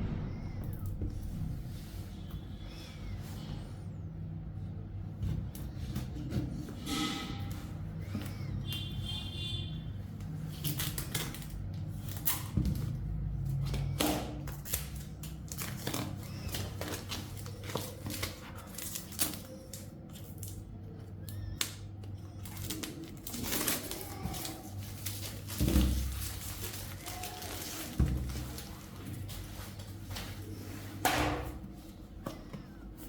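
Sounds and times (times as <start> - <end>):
steady low hum: 0.0 - 10.4.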